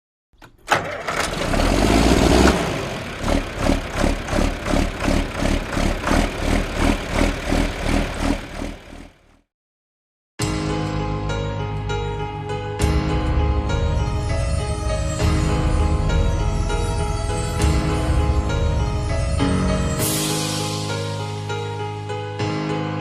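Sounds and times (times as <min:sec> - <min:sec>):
tractor diesel engine revving: 0:00.5 - 0:09.5.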